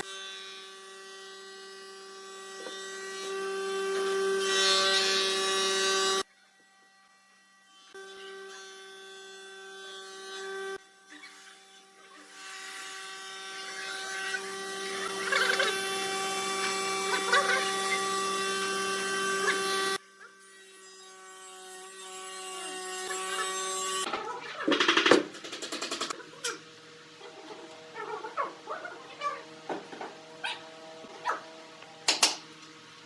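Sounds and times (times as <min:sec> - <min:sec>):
power tool motor whining: 0:10.0 - 0:33.0.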